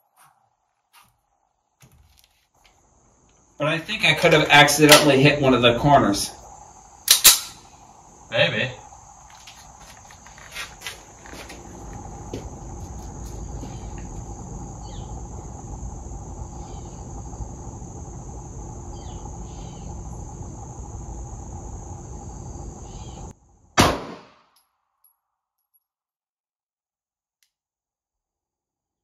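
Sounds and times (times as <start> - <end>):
crickets droning: 0.0 - 24.4
sharp clicks: 7.1 - 7.6.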